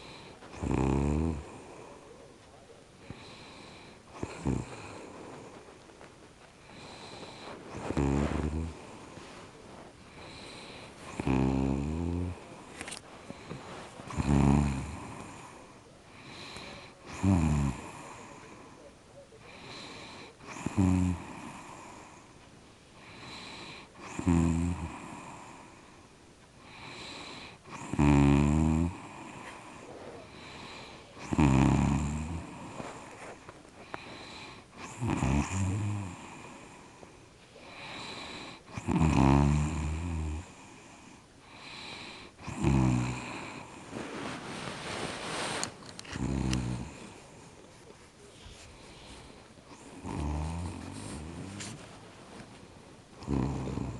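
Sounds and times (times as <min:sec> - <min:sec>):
faint breathing: 0:00.0 - 0:00.7, 0:01.3 - 0:28.0, 0:28.9 - 0:38.9, 0:40.0 - 0:53.9
deep rattling snore: 0:00.0 - 0:01.6, 0:03.1 - 0:05.6, 0:06.7 - 0:09.1, 0:10.2 - 0:12.5, 0:13.4 - 0:15.6, 0:16.3 - 0:18.4, 0:20.5 - 0:22.1, 0:23.1 - 0:25.6, 0:26.9 - 0:33.2, 0:33.8 - 0:36.7, 0:37.8 - 0:40.6, 0:41.6 - 0:43.9, 0:44.7 - 0:47.2, 0:49.0 - 0:51.8, 0:53.2 - 0:53.9.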